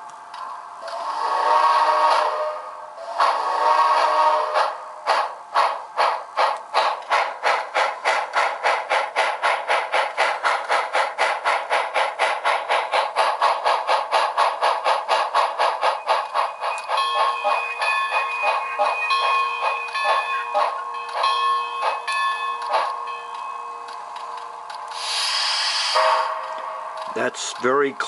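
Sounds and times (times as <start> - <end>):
model steam locomotive chuffs: 0.8 - 28.0
bell ringing: 16.8 - 23.9.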